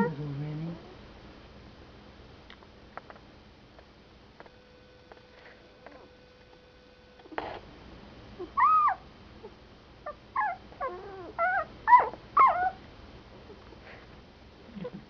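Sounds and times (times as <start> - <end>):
puppies squealing and whimpering: 8.5 - 9.0, 10.1 - 12.8.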